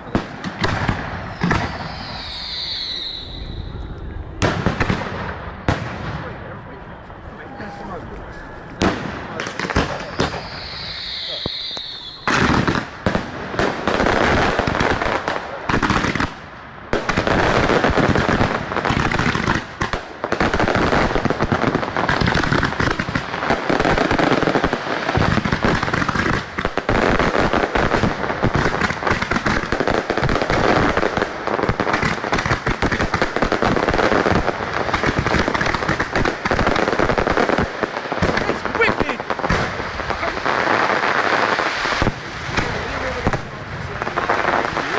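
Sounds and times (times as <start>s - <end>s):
fireworks banging and crackling: 0.0s - 44.9s.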